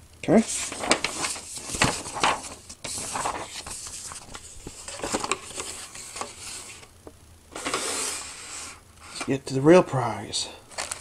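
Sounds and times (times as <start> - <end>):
cardboard box packaging rustling: 0.4 - 6.9, 10.7 - 11.0.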